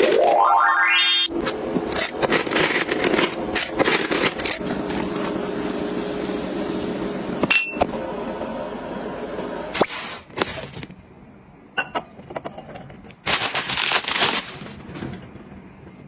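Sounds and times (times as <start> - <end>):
kitchen items clicking and knocking: 1.3 - 5.4, 11.8 - 15.3.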